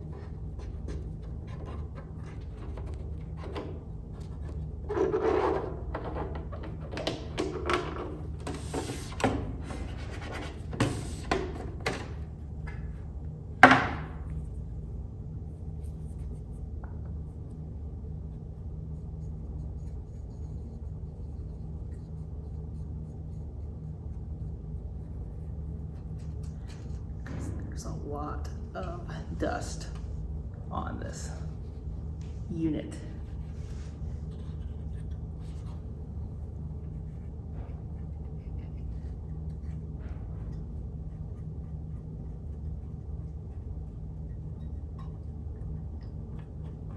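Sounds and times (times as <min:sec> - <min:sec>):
low hum: 0:00.0 - 0:46.9.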